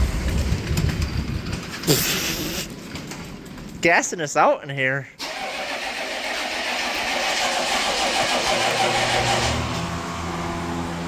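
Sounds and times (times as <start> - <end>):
diesel engine running rough: 0.0 - 2.8, 5.2 - 11.0.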